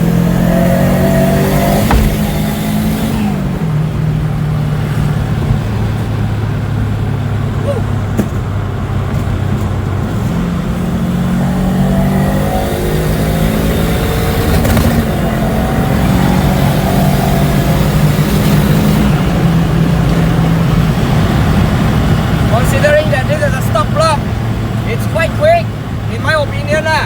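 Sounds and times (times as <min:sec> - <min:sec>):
car engine accelerating through gears: 0:00.0 - 0:25.2.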